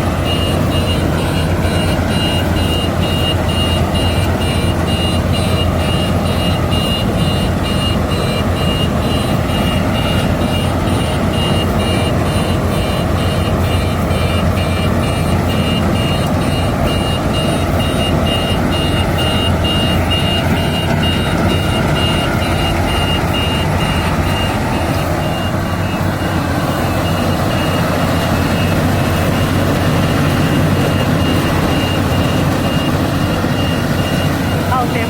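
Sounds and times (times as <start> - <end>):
combine harvester engine running: 0.0 - 35.0
electronic warning beeper: 0.0 - 35.0.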